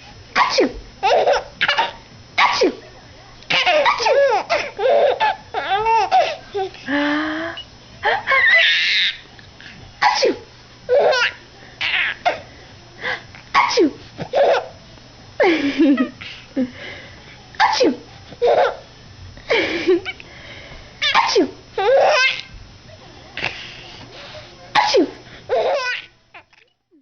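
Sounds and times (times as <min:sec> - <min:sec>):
woman sneezing: 0:00.4 - 0:00.8, 0:02.4 - 0:02.8, 0:10.0 - 0:10.4, 0:13.5 - 0:14.0, 0:17.6 - 0:18.0, 0:21.0 - 0:21.6, 0:24.8 - 0:25.2
baby laughing: 0:00.4 - 0:02.5, 0:03.5 - 0:06.8, 0:08.0 - 0:09.2, 0:10.9 - 0:12.4, 0:14.3 - 0:14.7, 0:18.4 - 0:18.8, 0:21.0 - 0:22.5, 0:25.5 - 0:26.5.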